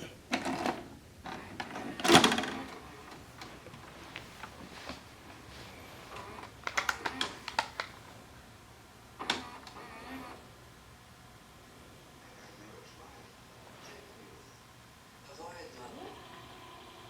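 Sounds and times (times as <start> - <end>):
tape mechanism clunk: 0.3 - 3.2.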